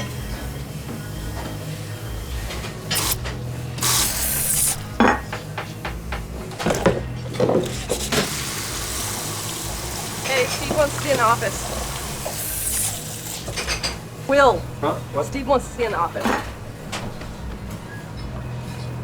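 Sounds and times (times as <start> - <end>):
hissing burst: 3.8 - 4.8
dishes and pans clattering: 4.6 - 8.4, 13.3 - 14.1, 15.9 - 19.0.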